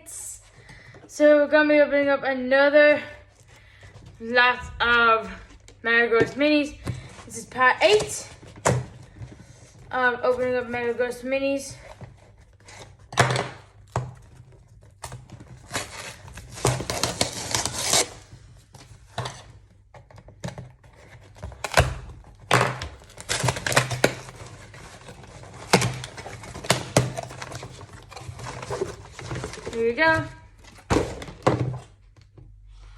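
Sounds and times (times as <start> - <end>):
packaging ripping and crinkling: 13.9 - 18.5, 20.9 - 29.8.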